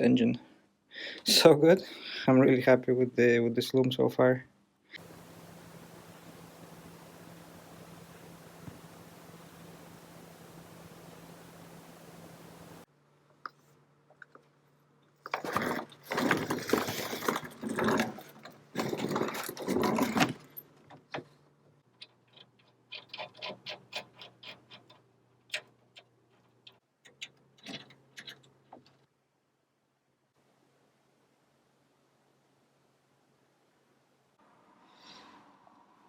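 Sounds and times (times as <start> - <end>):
faint steady hum: 3.2 - 15.3
loud rustling and clattering: 15.2 - 21.3.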